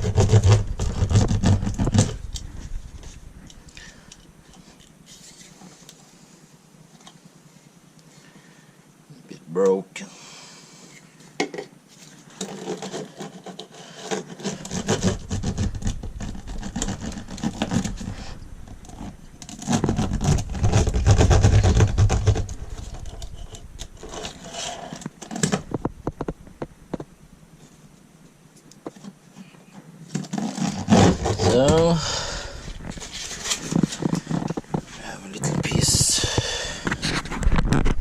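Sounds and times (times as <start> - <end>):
mat rubbing and scraping: 0.0 - 3.5, 11.9 - 28.0, 28.8 - 38.0.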